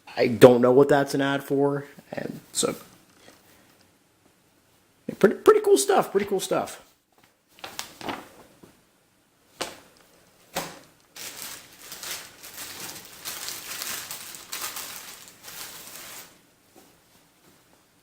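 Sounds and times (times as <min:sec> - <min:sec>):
paper rustling and crinkling: 0:07.2 - 0:08.5, 0:10.5 - 0:16.4.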